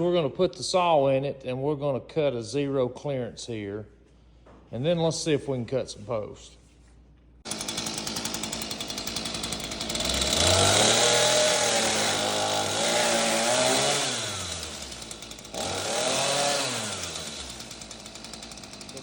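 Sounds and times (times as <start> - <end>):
chainsaw cutting wood: 7.4 - 19.0.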